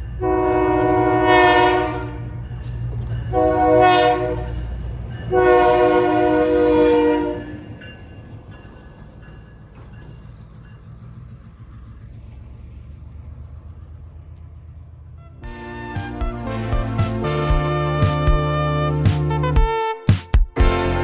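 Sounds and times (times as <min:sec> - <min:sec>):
locomotive engine rumble: 0:00.0 - 0:19.6
locomotive air horn blast: 0:00.2 - 0:02.4, 0:03.3 - 0:04.6, 0:05.3 - 0:07.7, 0:15.2 - 0:21.0.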